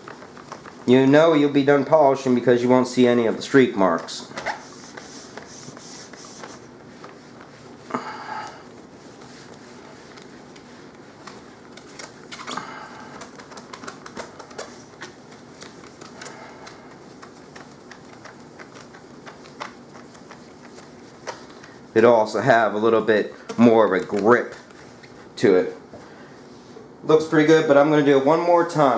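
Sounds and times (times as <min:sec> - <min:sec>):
cloth rubbing a screen: 0:00.0 - 0:01.5, 0:04.3 - 0:22.2, 0:23.9 - 0:25.5.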